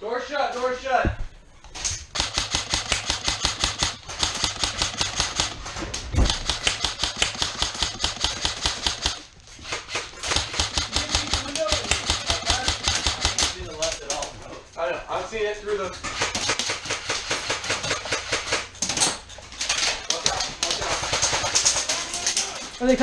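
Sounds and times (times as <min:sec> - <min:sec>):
airsoft rifle firing full auto: 0:02.1 - 0:13.6.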